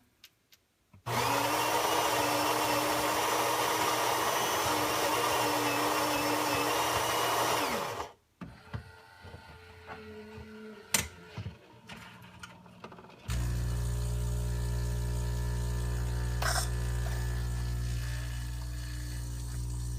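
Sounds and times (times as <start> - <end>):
coffee grinder grinding beans: 1.1 - 8.2, 13.3 - 19.9.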